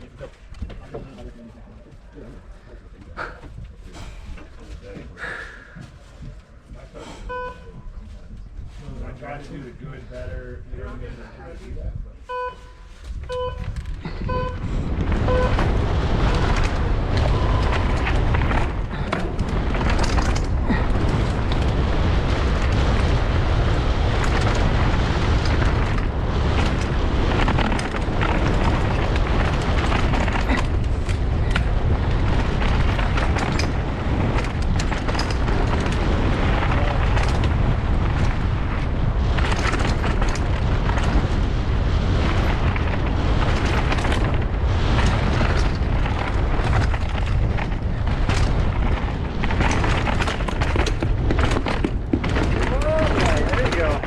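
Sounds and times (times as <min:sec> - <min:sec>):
wind rumble on microphone: 0:00.0 - 0:54.0
short beep: 0:07.2 - 0:07.8, 0:12.3 - 0:14.6, 0:15.3 - 0:15.6
bike chain and suspension rattling: 0:12.9 - 0:54.0
tyres on dirt and rock: 0:13.0 - 0:54.0.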